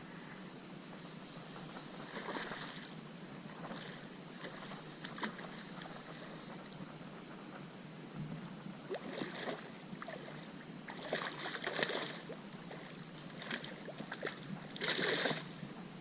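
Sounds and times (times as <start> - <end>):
fish splashing at water surface: 8.9 - 15.5.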